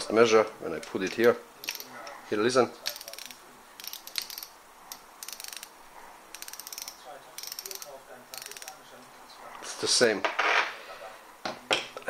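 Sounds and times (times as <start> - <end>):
fishing reel clicker ratcheting: 1.1 - 1.9, 2.9 - 5.7, 6.3 - 8.8.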